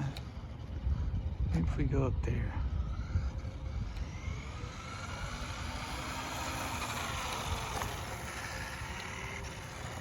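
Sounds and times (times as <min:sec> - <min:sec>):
toy car electric motor whining: 0:02.5 - 0:10.0.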